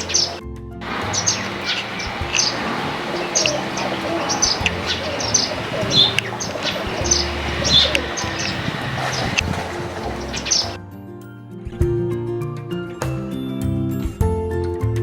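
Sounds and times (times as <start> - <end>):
small birds chirping: 0.0 - 10.8
steady background noise: 0.0 - 10.8.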